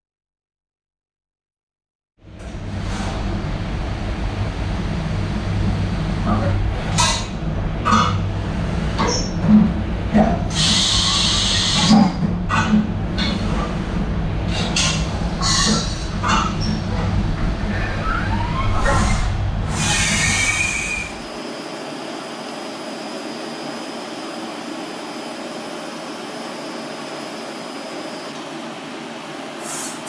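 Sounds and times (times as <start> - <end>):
machine cutting metal rumble: 2.2 - 21.4
cutter screeching in metal: 17.9 - 21.2.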